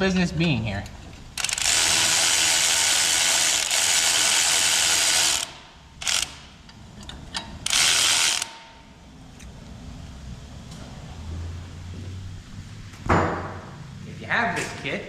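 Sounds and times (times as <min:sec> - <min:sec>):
power ratchet spinning: 0:01.3 - 0:06.6, 0:07.6 - 0:08.7.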